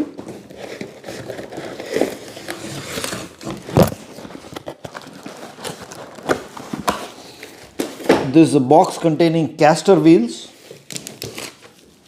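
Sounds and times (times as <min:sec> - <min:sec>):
packaging crackling and rustling: 0:00.0 - 0:08.1, 0:10.6 - 0:12.0.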